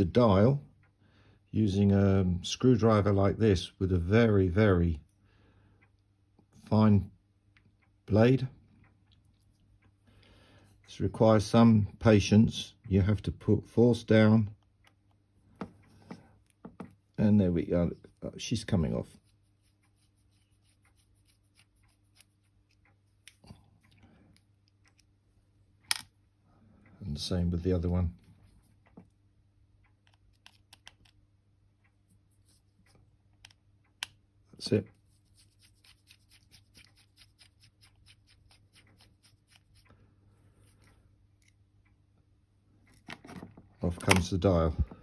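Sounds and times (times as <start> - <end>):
low steady hum: 0.0 - 45.0
screwdriver scratching and clicking: 18.7 - 24.0, 30.0 - 31.2, 35.0 - 39.9
screwdriver scraping clicks: 30.0 - 31.2.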